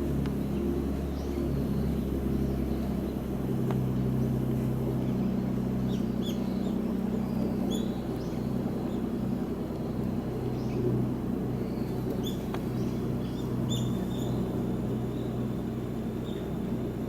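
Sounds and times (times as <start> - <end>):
low mechanical hum: 0.0 - 17.0
bird chirps: 11.7 - 14.5.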